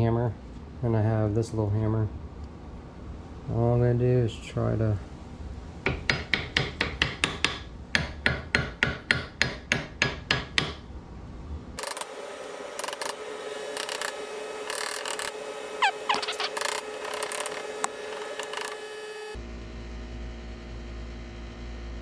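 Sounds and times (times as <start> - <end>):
irregular rasping: 15.0 - 18.8.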